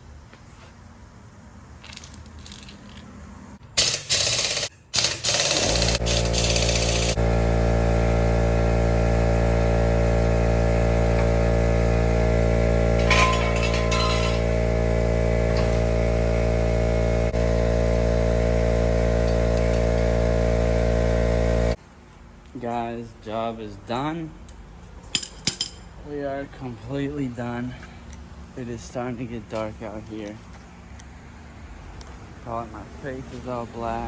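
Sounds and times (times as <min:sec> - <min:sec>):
machine humming steadily: 0:03.8 - 0:23.3.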